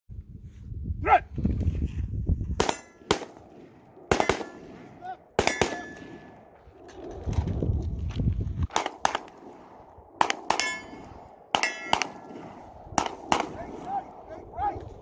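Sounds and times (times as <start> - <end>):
rifle shots: 2.6 - 6.6, 8.7 - 14.1
steel targets ringing: 5.4 - 6.3, 10.6 - 12.2.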